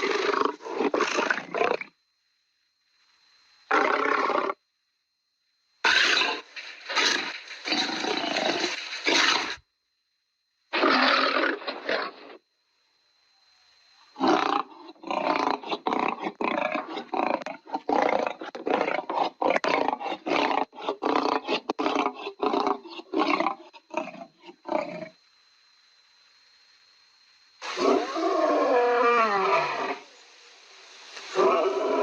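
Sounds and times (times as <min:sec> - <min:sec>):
faint high-pitched whine: 0:00.0 - 0:32.0
lion roaring: 0:27.7 - 0:30.1, 0:31.3 - 0:32.0.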